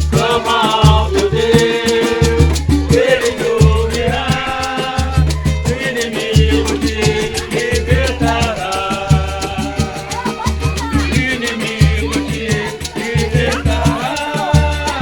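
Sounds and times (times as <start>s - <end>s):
repeated bass notes: 0.0s - 12.7s
band playing latin-style music: 0.0s - 15.0s
fast percussion beat: 0.0s - 15.0s.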